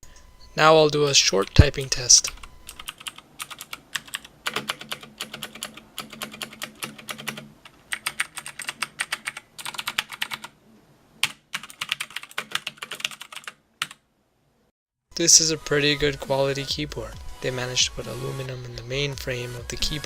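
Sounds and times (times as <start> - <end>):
mechanical keyboard typing: 1.4 - 10.5, 11.2 - 14.0.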